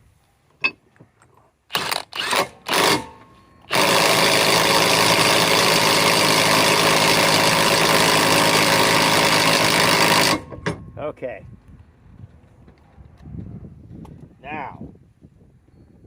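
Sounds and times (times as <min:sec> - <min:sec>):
cordless impact wrench hammering: 0:01.7 - 0:10.9.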